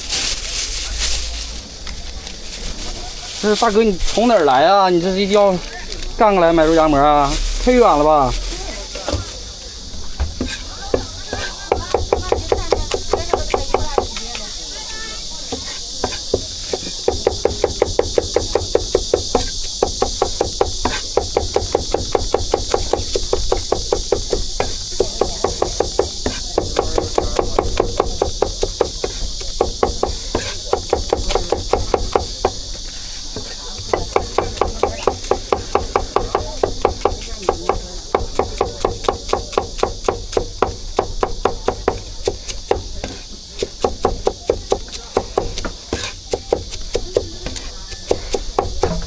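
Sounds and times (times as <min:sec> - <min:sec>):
cleaver chopping on wooden board: 0:10.2 - 0:14.3, 0:15.5 - 0:32.7, 0:33.3 - 0:49.0.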